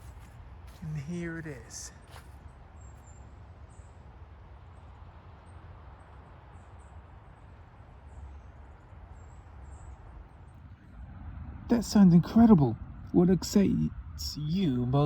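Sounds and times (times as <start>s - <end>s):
birds chirping: 0.0s - 3.9s, 8.0s - 15.0s
steady low rumble: 10.5s - 15.0s.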